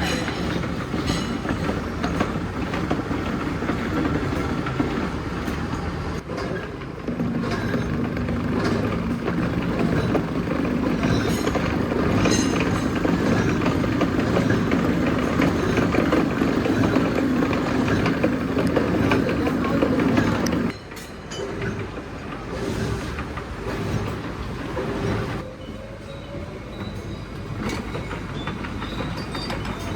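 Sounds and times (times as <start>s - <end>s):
milling machine running: 7.2s - 20.7s.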